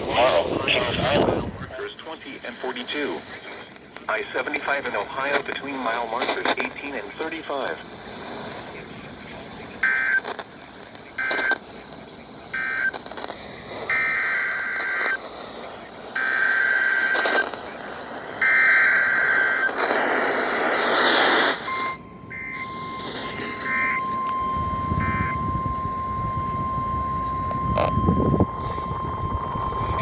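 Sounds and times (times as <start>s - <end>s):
steady warning alarm tone: 1.5s - 30.0s
data tone chirps: 8.7s - 30.0s
burst of hiss: 12.2s - 21.7s
warbling digital bursts: 20.6s - 30.0s.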